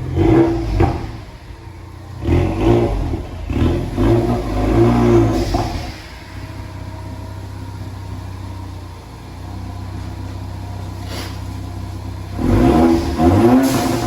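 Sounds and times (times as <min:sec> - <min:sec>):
car engine idling and revving: 0:00.0 - 0:14.0.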